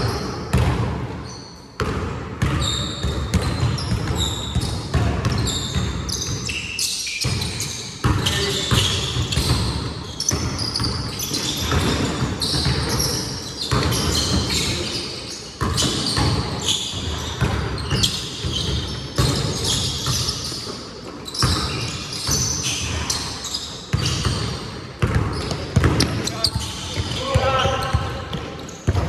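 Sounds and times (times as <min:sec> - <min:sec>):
basketball bouncing on court: 0:00.0 - 0:29.0
players' voices: 0:25.4 - 0:29.0.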